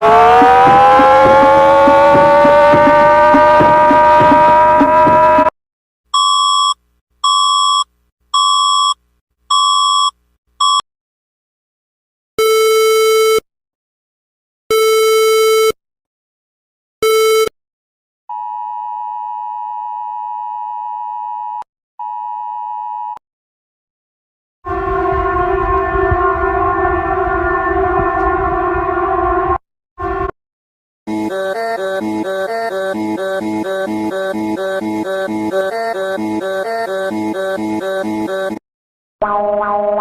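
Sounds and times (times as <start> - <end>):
steady alert tone: 0.0 - 5.4
harsh low alert tones: 0.0 - 5.5, 24.7 - 30.3, 39.2 - 40.0.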